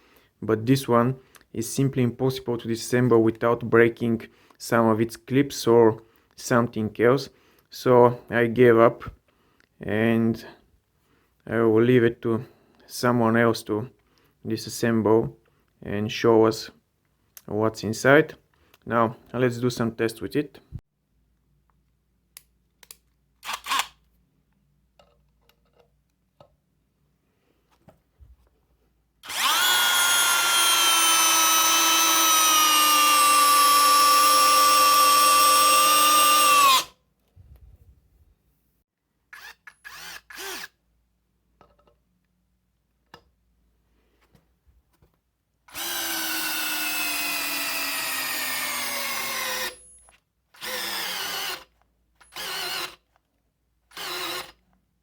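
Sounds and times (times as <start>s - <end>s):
cordless drill running: 29.2s - 36.9s, 39.3s - 40.8s, 45.7s - 49.9s, 50.5s - 53.0s, 53.9s - 54.6s.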